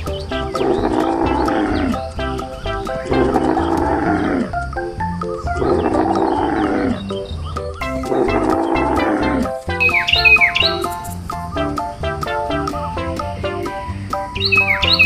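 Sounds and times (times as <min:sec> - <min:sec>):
background music with plucked notes: 0:00.0 - 0:15.0
hoarse animal calls: 0:00.1 - 0:11.8.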